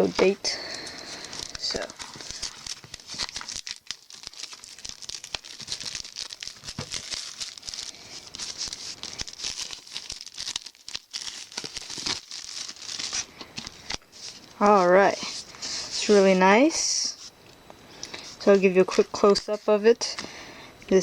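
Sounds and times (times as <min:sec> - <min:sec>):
plastic wrap tearing and crinkling: 0:00.0 - 0:16.0.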